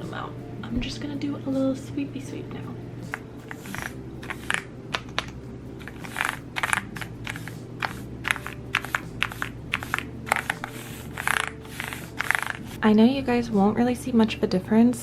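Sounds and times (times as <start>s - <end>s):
brush bristles scratching keycaps: 3.4s - 4.7s, 5.8s - 12.8s.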